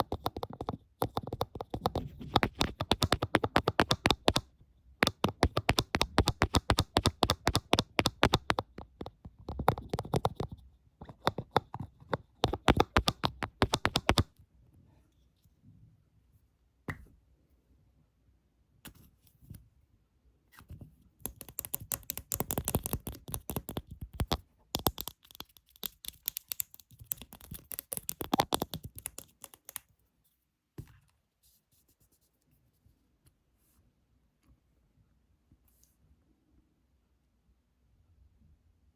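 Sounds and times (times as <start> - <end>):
fingertip tapping and scratching: 0.0 - 14.3, 21.2 - 29.9.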